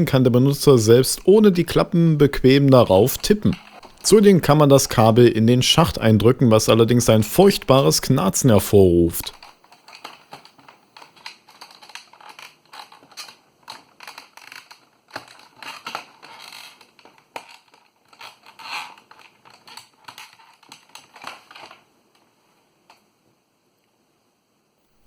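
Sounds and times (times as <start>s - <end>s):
plastic keyboard case creaking: 0.4s - 5.2s, 9.3s - 21.8s.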